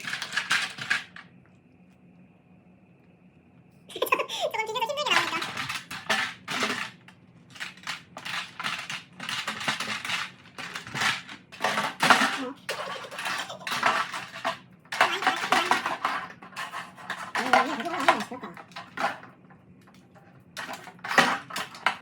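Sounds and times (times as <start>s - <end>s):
small hard objects clinking: 5.1s - 19.3s.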